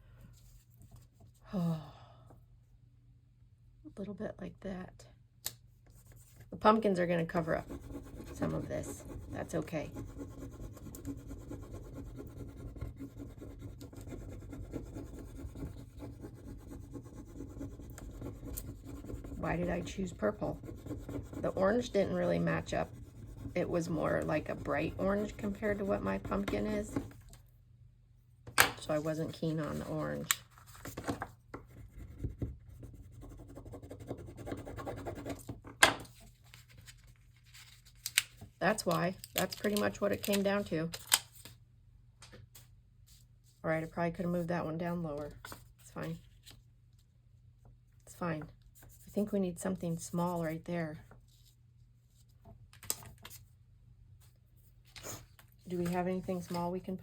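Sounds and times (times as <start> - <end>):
low steady hum: 0.0 - 57.0
paper rubbing and scratching: 5.9 - 27.1, 28.9 - 35.5
paper scraping and shuffling: 29.0 - 31.4, 36.1 - 41.6, 54.2 - 56.7.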